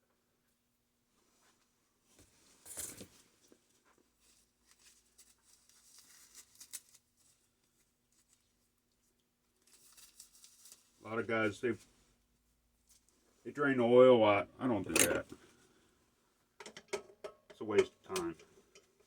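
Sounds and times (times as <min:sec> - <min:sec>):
scraping and rustling handling noises: 0:01.2 - 0:13.4, 0:14.7 - 0:15.8.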